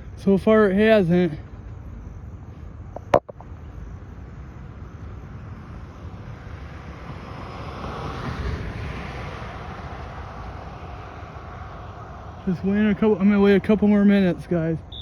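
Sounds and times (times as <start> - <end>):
vehicle passing: 3.8 - 14.9.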